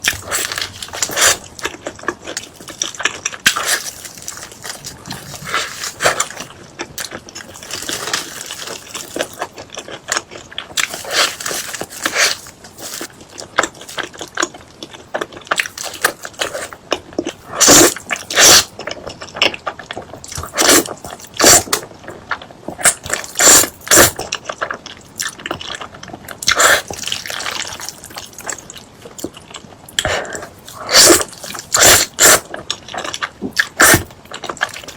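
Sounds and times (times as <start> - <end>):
crunching bites: 0.0 - 14.5
wet chewing and smacking: 0.0 - 34.9.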